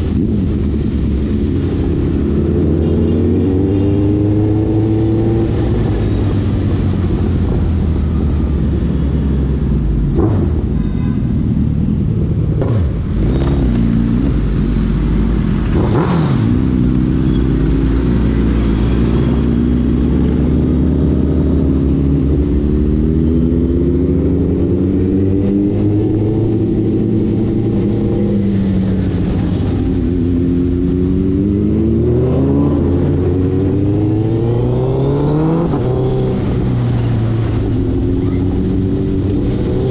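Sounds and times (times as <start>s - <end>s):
vehicles passing by: 0.0s - 39.9s
motorcycle engine revving: 12.6s - 39.9s.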